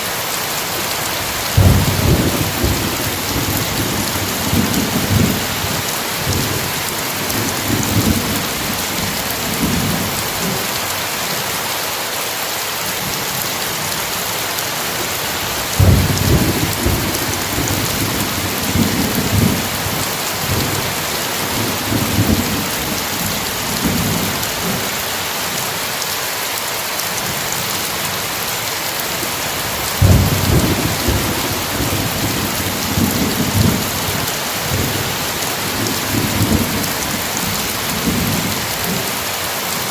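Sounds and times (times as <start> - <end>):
heavy rain: 0.0 - 39.9
rolling thunder: 1.6 - 10.5, 15.6 - 24.7, 30.0 - 39.0.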